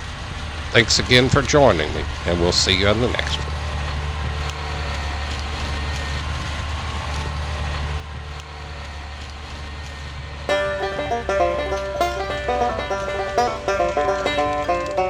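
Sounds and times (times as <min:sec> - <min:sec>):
banjo music: 0:10.5 - 0:15.0
diesel engine running: 0:10.5 - 0:15.0.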